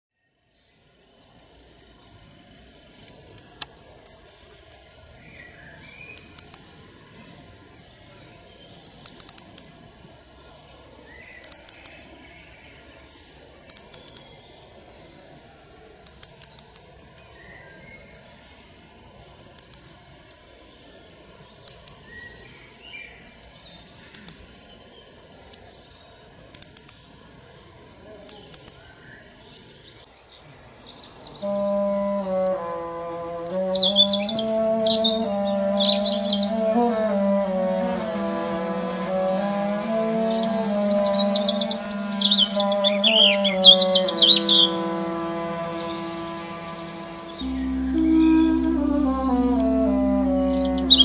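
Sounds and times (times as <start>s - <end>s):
robin calling short high notes: 31.4s - 51.0s.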